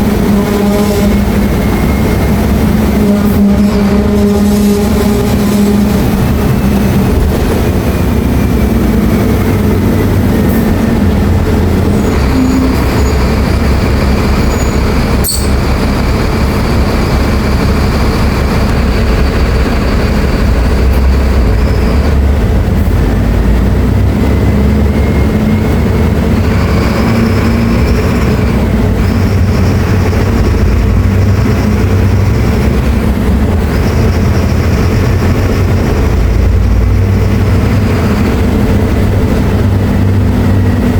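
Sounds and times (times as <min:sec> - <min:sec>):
diesel bus engine rumble: 0:00.0 - 0:40.9
high whine: 0:00.0 - 0:40.9.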